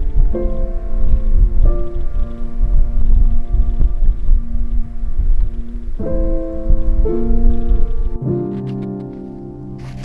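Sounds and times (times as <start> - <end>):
low rumble: 0.0 - 7.9.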